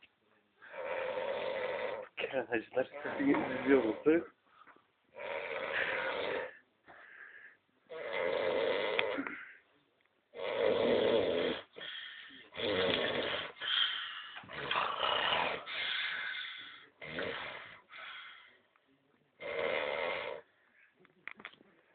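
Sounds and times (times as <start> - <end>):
person snoring: 0.7 - 2.2, 2.9 - 4.3, 5.2 - 6.6, 7.9 - 9.6, 10.4 - 17.9, 19.4 - 20.5.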